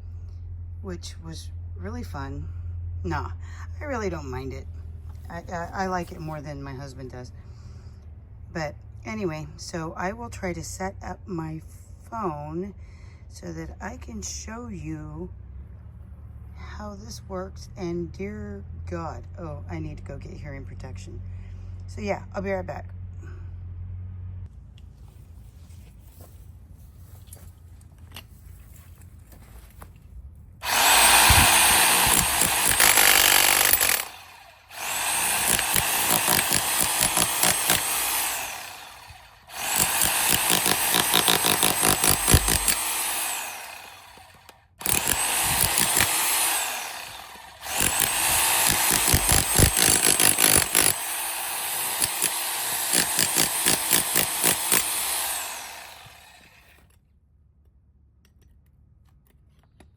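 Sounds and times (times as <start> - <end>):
demolition hammer breaking concrete: 30.7 - 34.2, 35.1 - 38.4, 39.6 - 43.3, 47.6 - 51.0.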